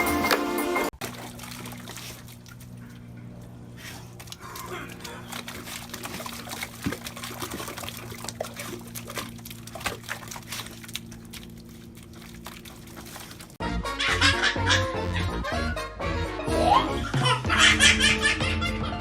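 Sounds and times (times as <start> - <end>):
water splashing and trickling: 0.0 - 13.6
steady low hum: 1.0 - 13.6.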